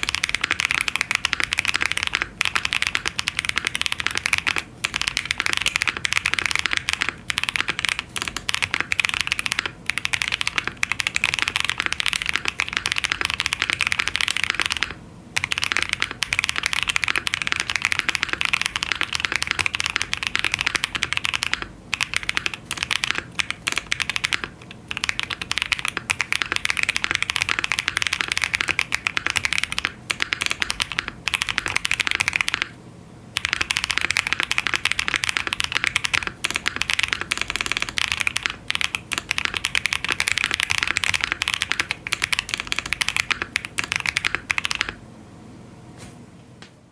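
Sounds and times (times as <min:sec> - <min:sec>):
fast typing on mechanical keyboard: 0:00.0 - 0:32.8, 0:33.4 - 0:45.0.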